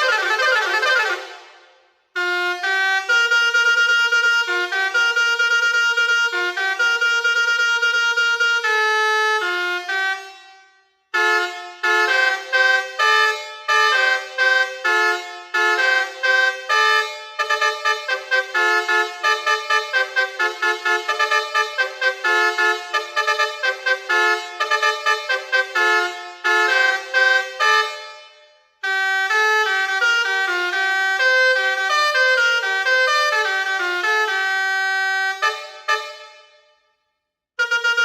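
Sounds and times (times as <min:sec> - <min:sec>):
musical air horn playing tunes: 0:00.0 - 0:36.8, 0:37.6 - 0:38.0.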